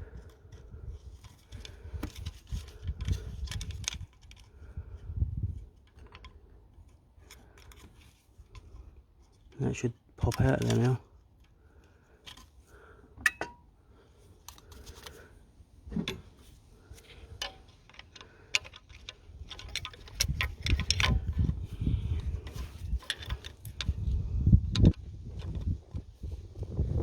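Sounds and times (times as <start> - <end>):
low rumbling wind on microphone: 0.0 - 5.8, 19.3 - 27.0
dull knocks and handling rumble: 14.4 - 26.4
hand tools clicking on plastic: 17.3 - 21.6.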